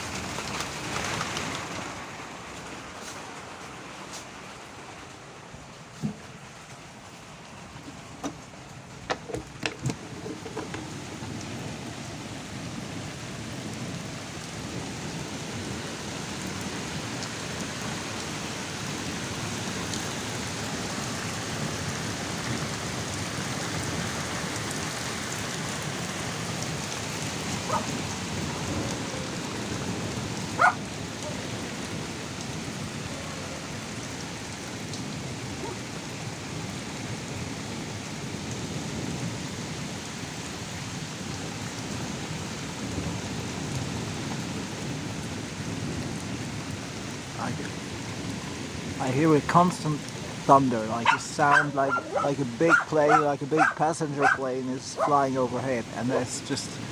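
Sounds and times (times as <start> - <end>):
heavy rain pouring: 0.0 - 56.9
low rumble of thunder: 21.5 - 54.3.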